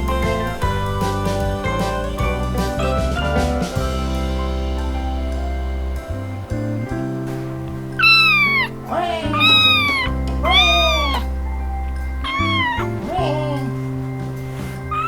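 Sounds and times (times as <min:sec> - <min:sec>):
background music: 0:00.0 - 0:15.0
kitten meowing: 0:08.0 - 0:11.4, 0:12.2 - 0:13.7.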